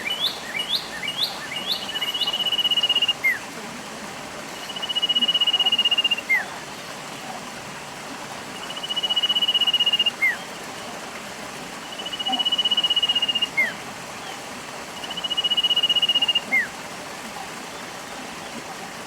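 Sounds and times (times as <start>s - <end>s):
stream flowing: 0.0s - 19.0s
animal trill call: 4.7s - 6.4s, 8.6s - 10.3s, 11.9s - 13.7s, 15.0s - 16.6s.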